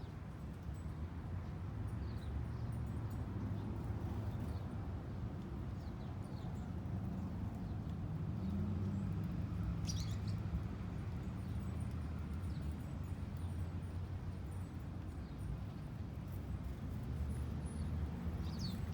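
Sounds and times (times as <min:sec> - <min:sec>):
small birds chirping: 0:18.4 - 0:18.9.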